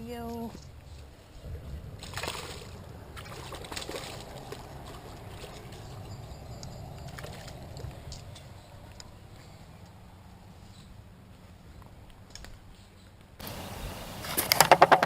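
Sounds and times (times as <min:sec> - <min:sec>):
water splashing and trickling: 0:00.0 - 0:11.1.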